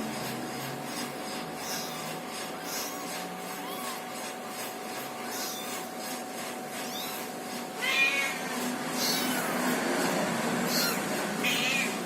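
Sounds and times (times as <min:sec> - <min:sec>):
cat meowing: 0:01.6 - 0:04.0, 0:06.8 - 0:09.6, 0:10.7 - 0:12.0.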